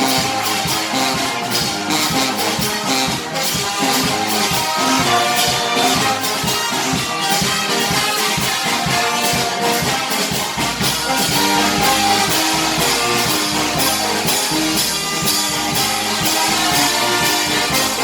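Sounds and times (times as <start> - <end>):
music with guitar and drums: 0.0 - 18.0.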